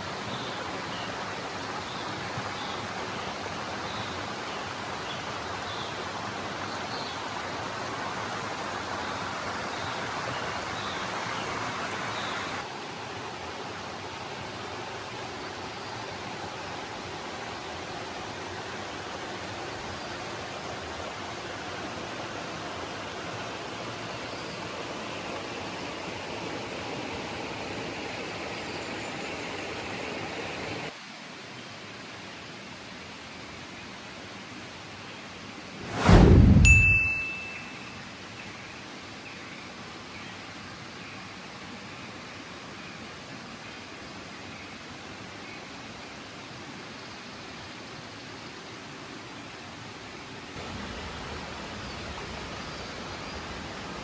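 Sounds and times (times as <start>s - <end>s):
faint high chirps: 36.7s - 38.1s
river water rushing: 48.8s - 54.0s.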